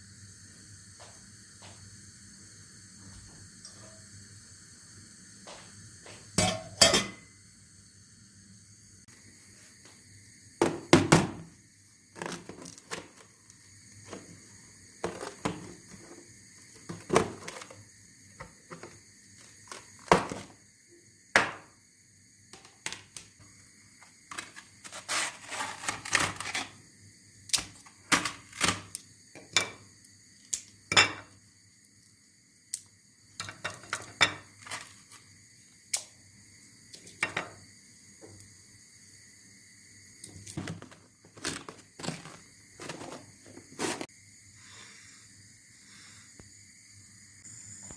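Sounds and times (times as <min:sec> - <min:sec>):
faint steady hum: 0:00.0 - 0:47.9
dishes and cutlery clinking: 0:06.4 - 0:07.2.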